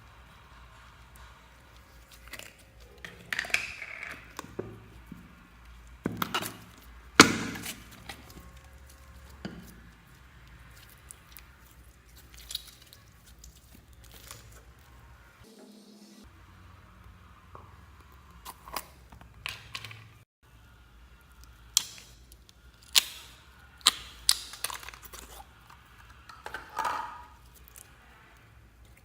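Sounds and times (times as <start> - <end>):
slime crackling and popping: 6.2 - 14.8, 21.4 - 25.4.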